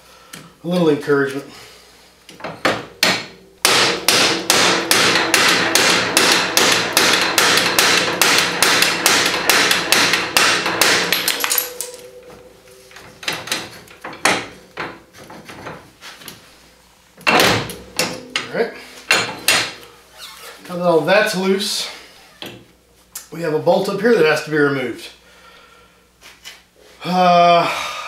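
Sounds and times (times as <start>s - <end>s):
hammer striking a bolt: 2.4s - 12.2s, 13.0s - 15.8s, 17.2s - 19.9s.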